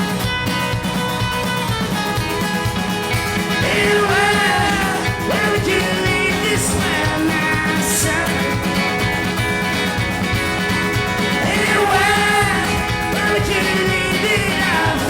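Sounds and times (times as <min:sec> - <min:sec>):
guitar: 0:00.0 - 0:15.0
steady drum beat: 0:00.0 - 0:15.0
person singing: 0:03.5 - 0:09.3, 0:11.3 - 0:15.0.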